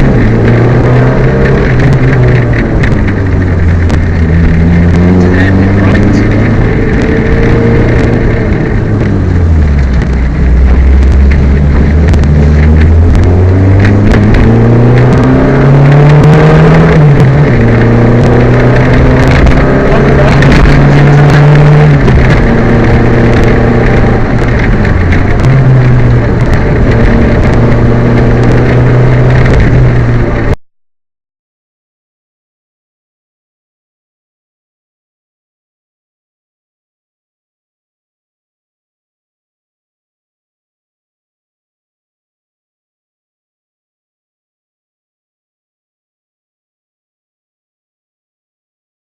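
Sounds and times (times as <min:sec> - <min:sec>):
misfiring rally car engine: 0:00.0 - 0:30.6.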